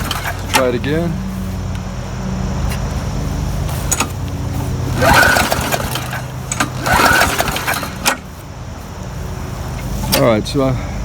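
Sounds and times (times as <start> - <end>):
small engine turning over: 0.0 - 0.8, 3.7 - 8.4
low engine hum: 0.0 - 11.0.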